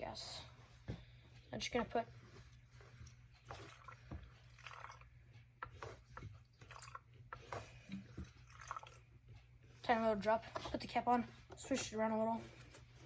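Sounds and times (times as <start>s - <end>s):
liquid dripping and trickling: 3.3s - 9.3s
gasoline pouring into tank: 3.4s - 5.1s, 6.6s - 9.1s.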